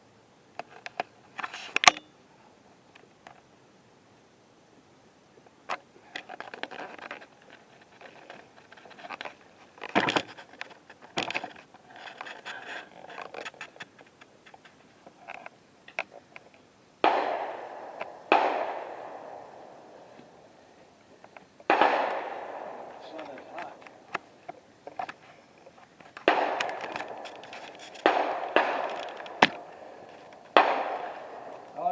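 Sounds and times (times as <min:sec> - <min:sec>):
rifle gunshots with echo: 0:17.0 - 0:20.4, 0:21.7 - 0:23.9, 0:26.2 - 0:27.2, 0:28.0 - 0:31.9.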